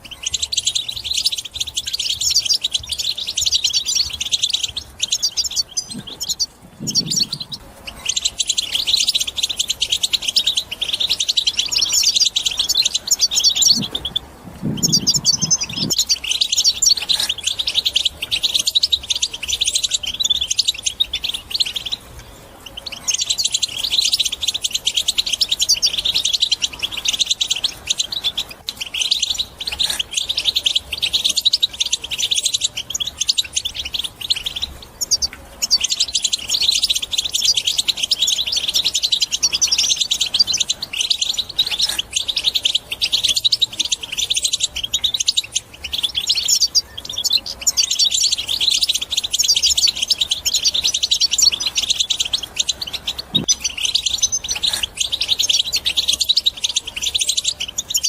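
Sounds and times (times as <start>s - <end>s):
bird twittering and trilling: 0.0s - 58.0s.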